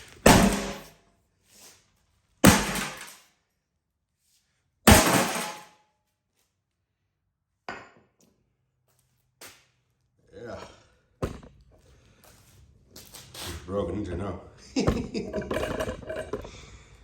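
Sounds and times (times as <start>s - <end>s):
sledge maul striking metal safe: 0.2s - 0.9s, 2.4s - 3.1s, 4.9s - 5.6s.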